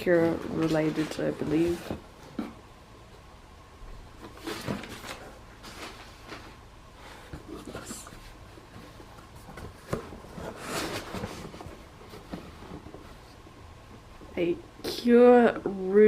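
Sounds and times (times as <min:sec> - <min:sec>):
packaging rustling: 0:04.1 - 0:13.4.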